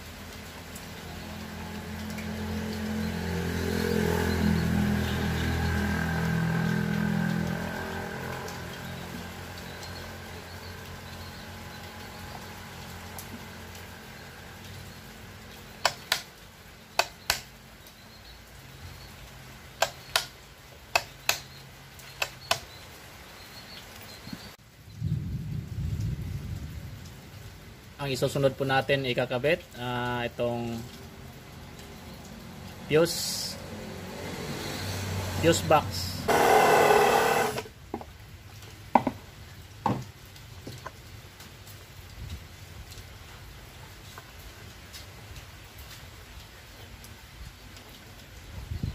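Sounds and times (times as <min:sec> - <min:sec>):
sharp clicks in pairs: 0:15.8 - 0:16.3, 0:17.0 - 0:17.5, 0:19.8 - 0:21.5, 0:22.1 - 0:22.7
small power tool motor: 0:36.3 - 0:37.7.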